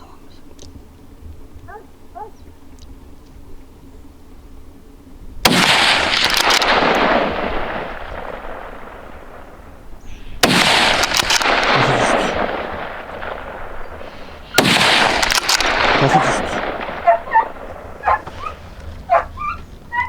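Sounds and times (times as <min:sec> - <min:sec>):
gunshots with rolling echo: 0:05.4 - 0:20.0.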